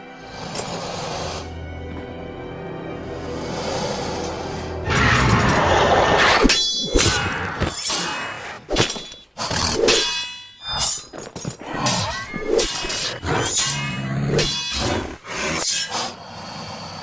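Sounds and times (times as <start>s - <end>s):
metal blade clangs: 6.4s - 15.9s.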